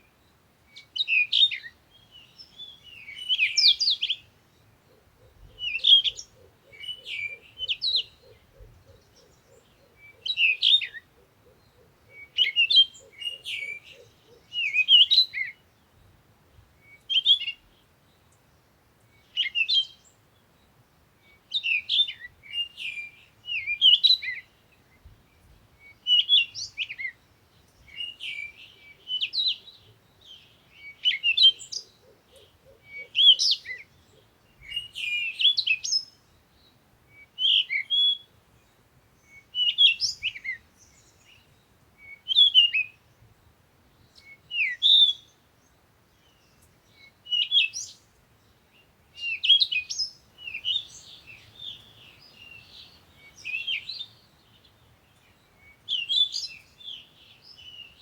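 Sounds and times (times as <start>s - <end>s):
songbird whistling phrases: 44.2s - 45.3s, 47.0s - 48.0s, 49.2s - 54.2s.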